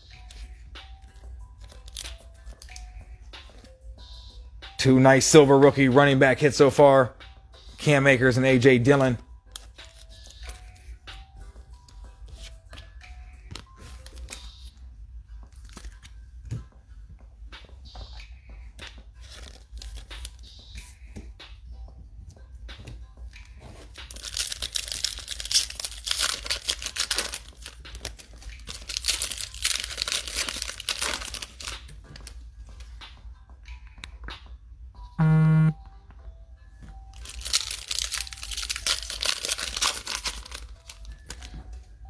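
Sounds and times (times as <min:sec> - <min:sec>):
small clicks and handling noises: 0:00.0 - 0:03.7, 0:37.1 - 0:41.9
packaging tearing and crinkling: 0:24.1 - 0:31.8, 0:37.2 - 0:41.5.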